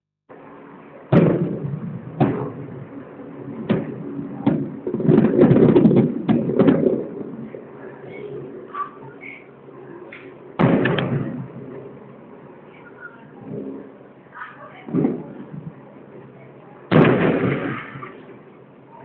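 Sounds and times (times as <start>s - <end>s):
fireworks booming: 1.0s - 7.7s, 10.2s - 12.0s, 14.8s - 15.8s, 16.9s - 18.3s
fireworks crackling: 1.1s - 7.7s, 10.3s - 11.7s, 16.9s - 18.3s.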